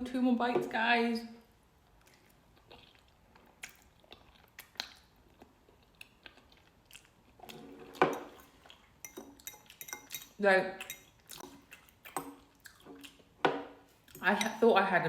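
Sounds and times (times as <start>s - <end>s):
person chewing food: 1.8s - 14.2s.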